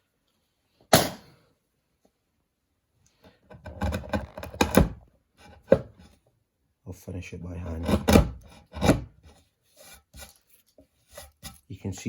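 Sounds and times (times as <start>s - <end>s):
chisel scraping wood: 3.5s - 6.2s, 7.6s - 12.0s.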